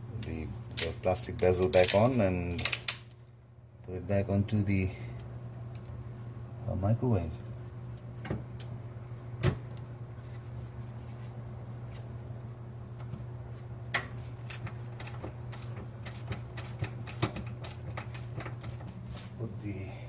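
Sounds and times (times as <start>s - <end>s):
steady low hum: 0.0s - 20.0s
plastic parts clicking and knocking: 1.6s - 3.2s.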